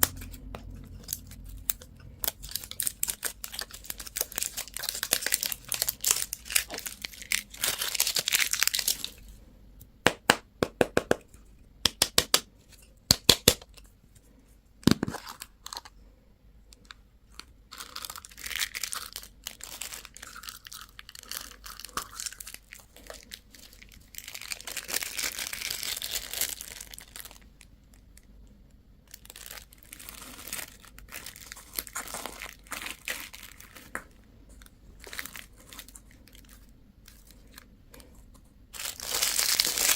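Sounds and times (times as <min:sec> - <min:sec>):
plastic wrappers crinkling: 0:00.0 - 0:09.4, 0:16.8 - 0:28.3, 0:29.0 - 0:39.9.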